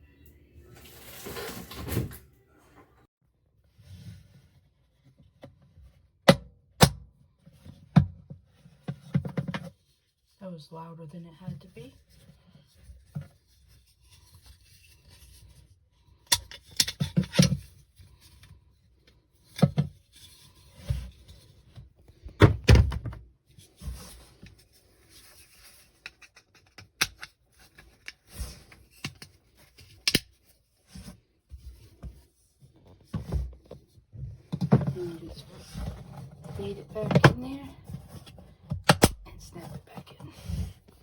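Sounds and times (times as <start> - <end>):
plastic parts knocking and clicking: 16.2 - 17.7.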